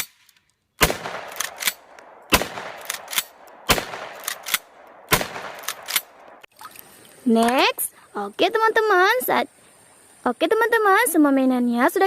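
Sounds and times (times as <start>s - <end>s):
shotgun blasts: 0.8s - 6.5s.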